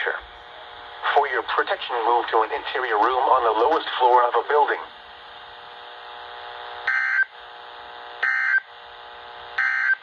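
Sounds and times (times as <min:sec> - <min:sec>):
radio hiss: 0:00.0 - 0:10.0
warbling two-tone data bursts: 0:06.9 - 0:07.3, 0:08.2 - 0:08.6.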